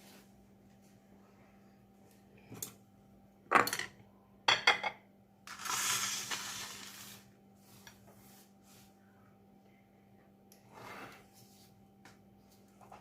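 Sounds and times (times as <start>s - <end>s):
glassware clinking: 4.5s - 5.0s.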